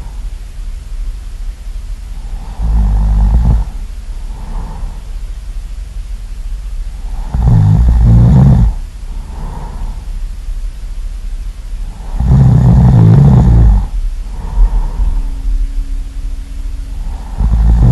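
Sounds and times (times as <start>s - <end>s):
loud snoring: 2.2s - 5.1s, 7.0s - 10.1s, 11.8s - 15.4s, 17.0s - 17.9s.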